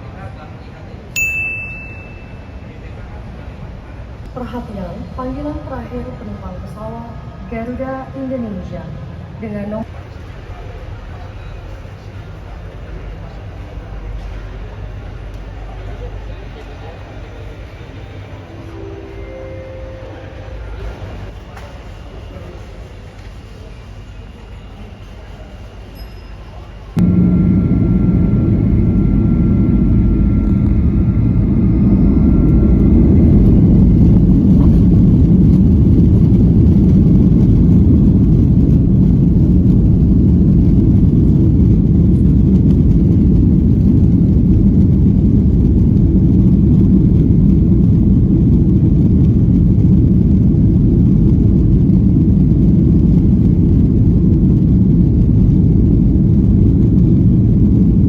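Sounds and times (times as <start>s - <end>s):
jet engine and airflow rumble: 0.0s - 25.8s, 26.6s - 58.0s
faint high whine: 16.6s - 49.4s.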